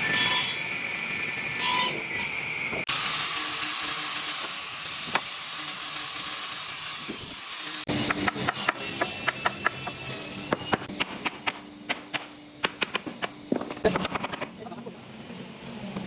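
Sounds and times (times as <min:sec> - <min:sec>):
steady workshop hiss: 0:00.0 - 0:07.9.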